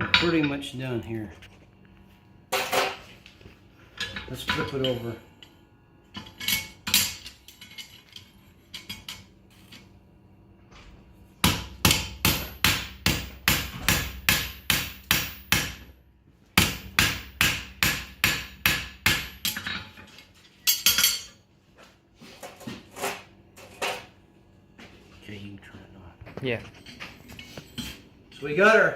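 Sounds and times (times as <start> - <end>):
hammer striking horseshoe on anvil: 11.4 - 15.9, 16.6 - 20.0.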